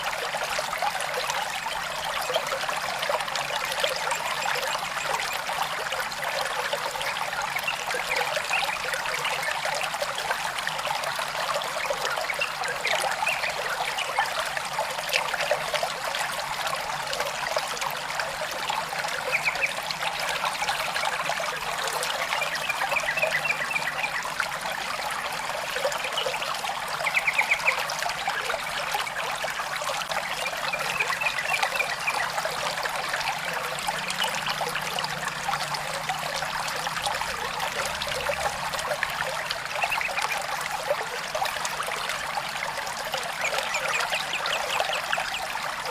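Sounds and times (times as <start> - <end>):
stream water trickling: 0.0 - 45.9.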